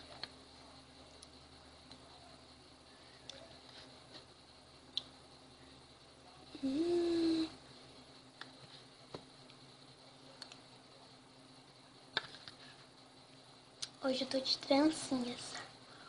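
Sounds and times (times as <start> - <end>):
person humming: 6.5 - 7.6.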